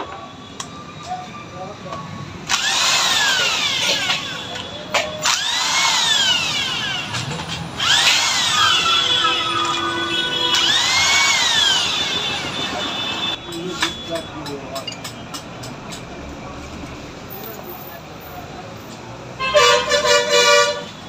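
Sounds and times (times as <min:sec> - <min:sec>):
electric drill whining: 0:02.4 - 0:04.6, 0:05.2 - 0:13.2.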